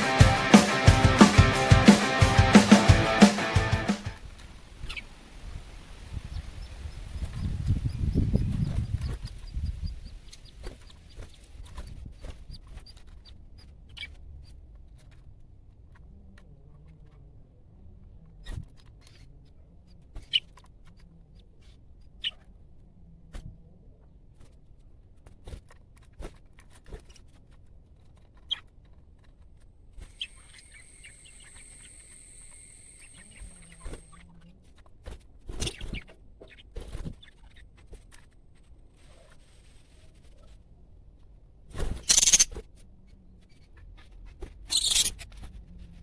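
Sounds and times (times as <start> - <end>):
budgies pecking at food: 4.3 - 15.2, 25.4 - 40.6, 41.8 - 42.6, 43.4 - 45.9
short high bird chirps: 30.2 - 34.1, 42.0 - 42.5, 44.7 - 45.2
steady high whine: 30.2 - 34.1.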